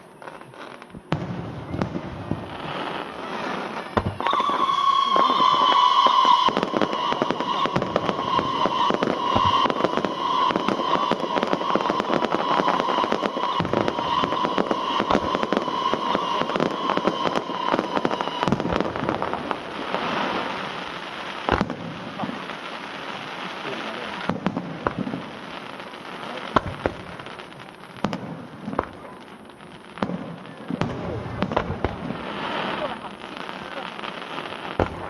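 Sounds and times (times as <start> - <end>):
fireworks crackling and popping: 0.0 - 35.0
high whistle: 4.2 - 18.6.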